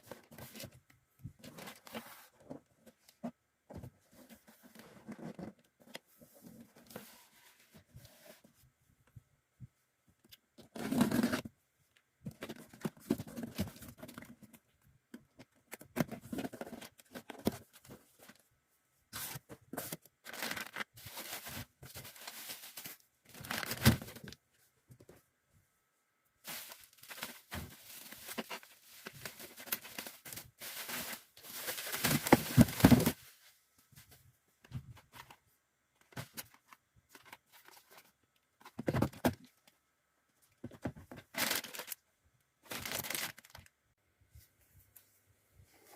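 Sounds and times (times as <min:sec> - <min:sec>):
packing material tearing and crinkling: 0:20.2 - 0:24.3, 0:42.7 - 0:43.7.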